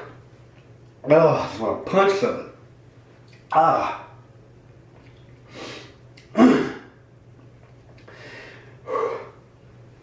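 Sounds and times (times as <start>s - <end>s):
man exhaling breathily: 8.1s - 9.4s
man gasping loudly: 8.1s - 9.4s.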